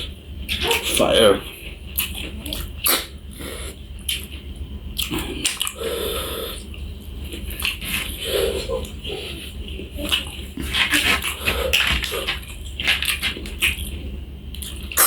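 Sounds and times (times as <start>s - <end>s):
person chewing and biting food: 4.0s - 5.8s.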